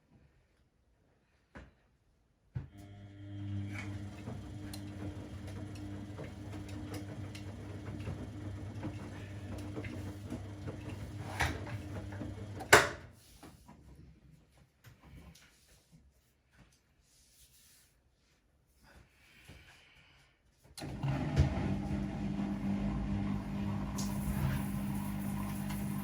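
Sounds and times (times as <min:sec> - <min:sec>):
washing machine motor humming: 0:02.8 - 0:12.7, 0:20.8 - 0:26.0.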